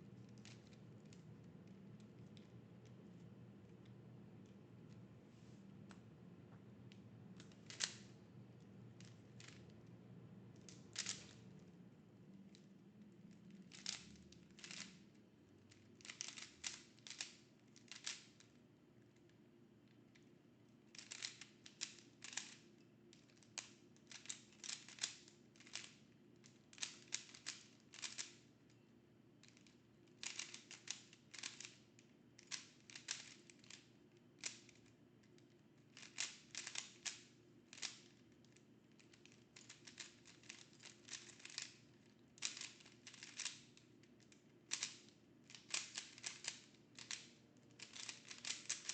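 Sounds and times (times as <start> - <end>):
puzzle cube plastic clicks: 0.2 - 1.2, 7.4 - 8.2, 9.0 - 9.8, 10.6 - 11.7, 12.5 - 15.0, 15.7 - 18.6, 20.9 - 28.5, 29.4 - 48.9.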